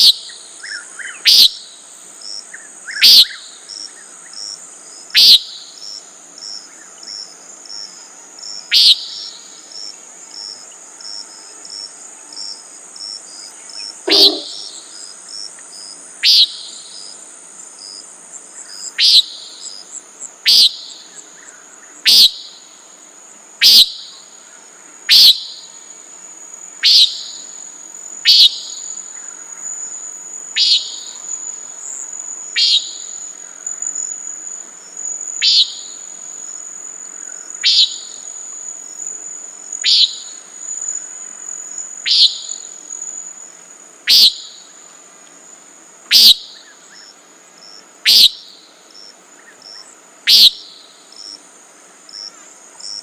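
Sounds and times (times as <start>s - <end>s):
nighthawk peent calls: 0.0s - 1.6s, 2.9s - 3.5s, 5.2s - 5.6s, 8.7s - 9.5s, 14.0s - 15.0s, 16.2s - 16.9s, 18.9s - 19.6s, 20.4s - 21.1s, 22.0s - 22.6s, 23.6s - 24.3s, 25.1s - 25.7s, 26.8s - 27.6s, 28.2s - 28.9s, 30.6s - 31.3s, 32.5s - 33.2s, 35.3s - 36.0s, 37.2s - 38.4s, 39.8s - 40.9s, 41.9s - 43.0s, 44.1s - 44.8s, 46.1s - 47.0s, 48.0s - 48.6s, 50.3s - 50.8s
crickets trilling: 0.0s - 53.0s.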